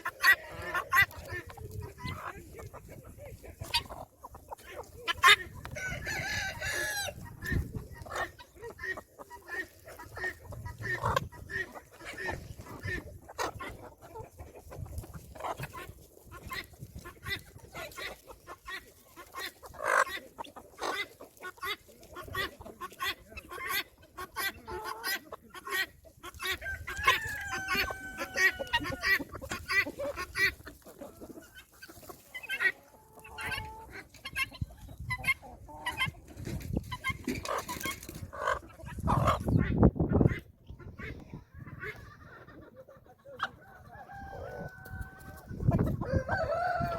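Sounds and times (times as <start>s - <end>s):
chickens clucking: 0.0s - 46.9s
rooster crowing: 5.8s - 7.2s, 26.6s - 29.0s, 46.0s - 46.9s.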